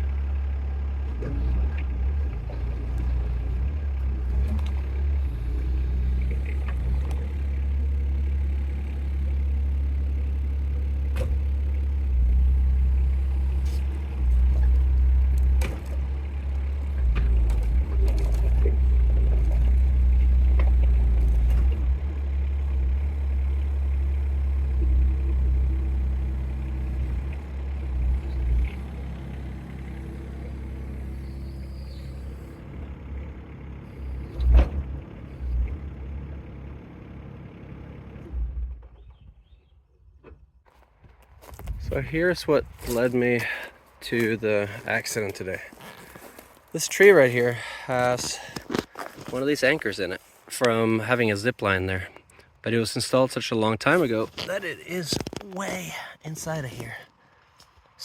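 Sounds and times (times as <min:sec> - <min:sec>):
small diesel engine running: 0:00.0 - 0:39.6, 0:40.7 - 0:53.0.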